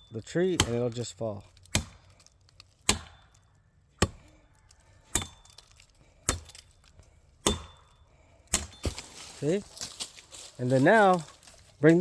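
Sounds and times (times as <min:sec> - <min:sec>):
blade chopping into wood: 0:00.4 - 0:02.2, 0:02.8 - 0:03.4, 0:04.0 - 0:04.3, 0:05.1 - 0:06.7, 0:07.4 - 0:07.9, 0:08.5 - 0:09.2.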